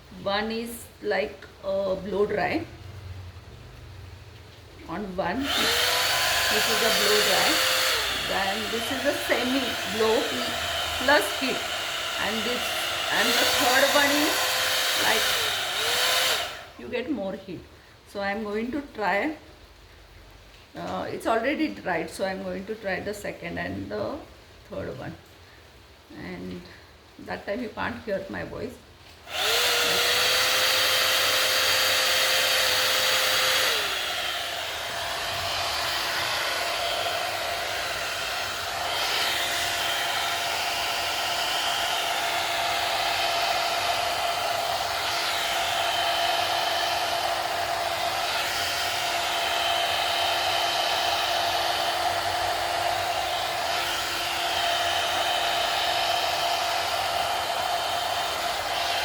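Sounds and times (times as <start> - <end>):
hot air brush running: 4.9 - 16.9, 29.3 - 59.0.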